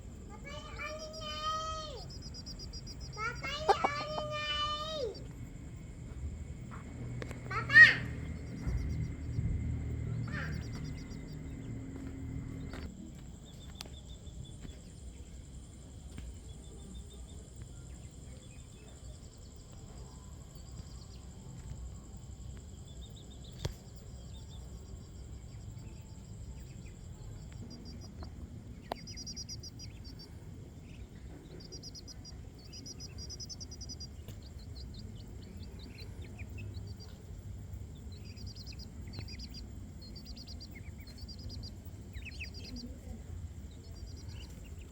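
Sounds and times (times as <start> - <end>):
small birds chirping: 0.0 - 44.9
low rumble: 5.2 - 12.9.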